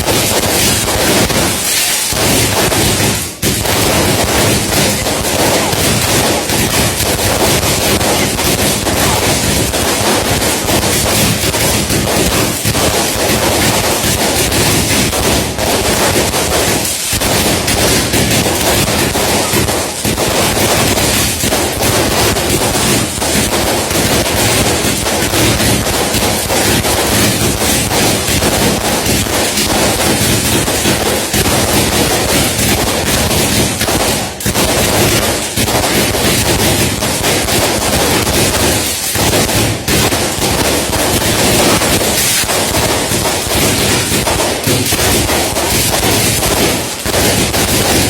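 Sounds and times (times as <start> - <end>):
fireworks bangs and crackles: 0.0 - 48.0.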